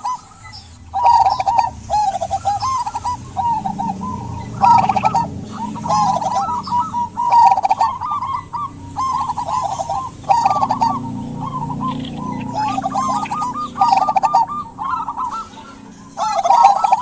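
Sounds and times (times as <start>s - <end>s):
doves cooing: 0.0s - 17.0s.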